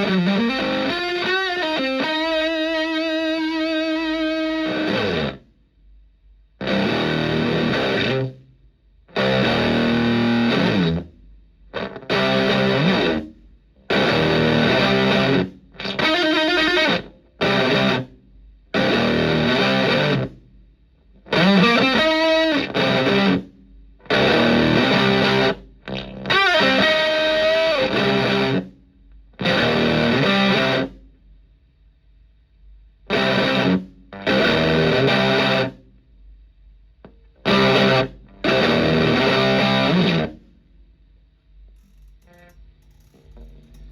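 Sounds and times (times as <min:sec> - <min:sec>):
fuzzed electric guitar chords: 0:00.0 - 0:05.4, 0:06.6 - 0:08.4, 0:09.1 - 0:11.1, 0:11.7 - 0:20.4, 0:21.2 - 0:28.8, 0:29.4 - 0:31.0, 0:33.1 - 0:35.8, 0:37.3 - 0:40.5.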